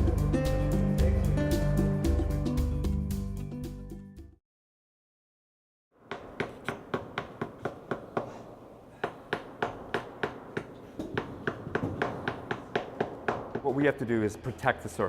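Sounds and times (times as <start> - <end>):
sharp taps on plaster: 6.1 - 8.4, 9.0 - 13.8.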